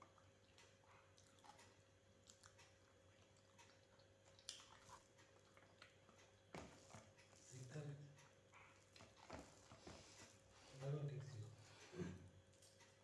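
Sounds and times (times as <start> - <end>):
small wet clicks: 0.0 - 6.4
close-up chewing: 0.0 - 10.6
low steady hum: 0.0 - 13.0.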